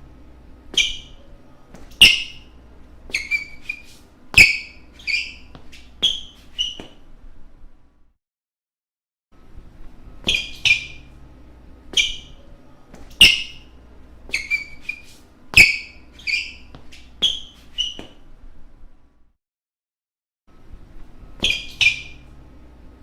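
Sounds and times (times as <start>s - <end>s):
shoes squeaking on court floor: 0.7s - 7.1s, 10.2s - 11.2s, 11.9s - 18.3s, 21.4s - 22.4s.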